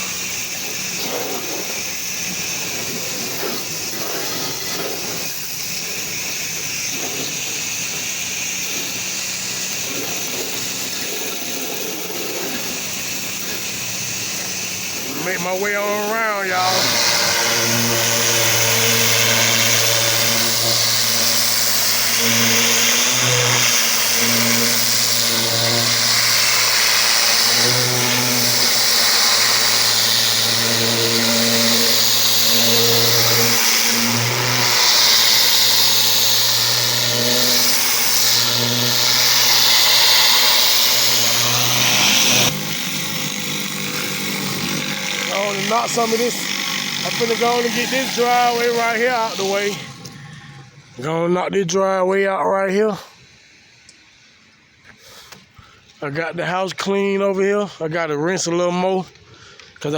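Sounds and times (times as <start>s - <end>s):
pressure washer engine running: 0.0s - 51.0s
high-pressure water jet hissing: 0.0s - 51.1s.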